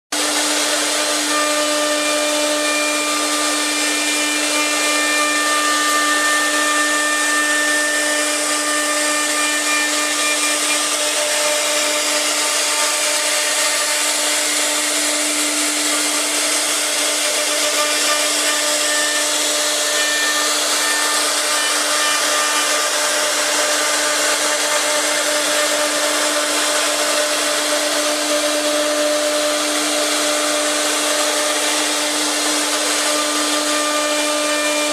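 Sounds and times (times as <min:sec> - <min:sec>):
router spindle whine carving wood: 0:00.2 - 0:34.9.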